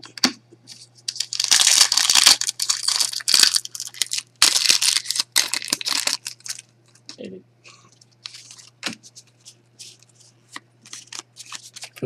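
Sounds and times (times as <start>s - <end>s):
foil wrapper tearing and crinkling: 1.1s - 6.7s, 10.8s - 12.0s.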